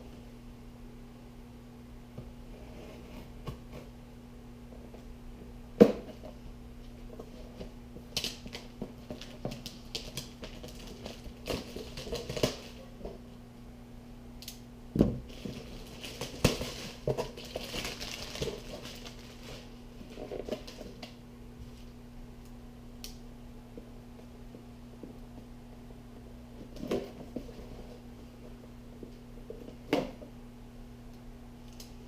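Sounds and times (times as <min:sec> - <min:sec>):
faint hum: 0:00.0 - 0:32.0
packaging rustling and crinkling: 0:07.5 - 0:12.9, 0:15.3 - 0:21.2.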